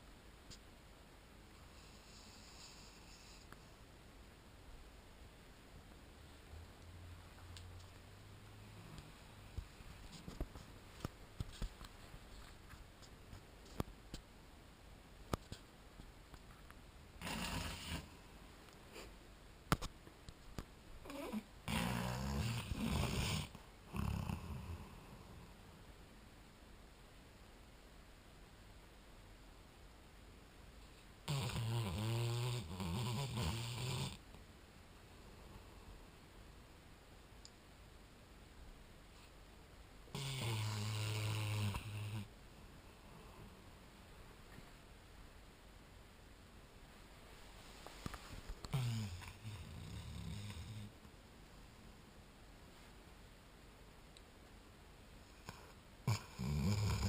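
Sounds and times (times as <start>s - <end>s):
dog snoring: 1.7s - 3.6s, 17.2s - 18.2s, 21.0s - 25.5s, 31.2s - 34.2s, 40.1s - 42.3s, 48.6s - 50.9s, 55.3s - 57.0s.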